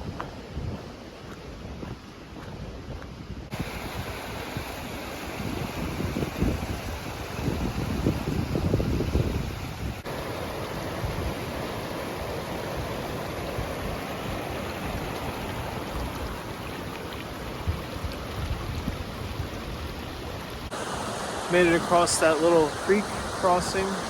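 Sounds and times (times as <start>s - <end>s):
wind rumble on microphone: 0.0s - 10.1s, 17.6s - 20.7s
creek running over rocks: 0.0s - 24.0s.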